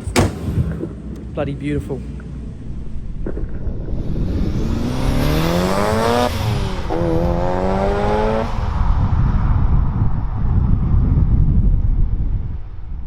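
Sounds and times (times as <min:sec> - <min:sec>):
steady low rumble: 0:00.0 - 0:13.0
car engine accelerating: 0:02.4 - 0:10.0.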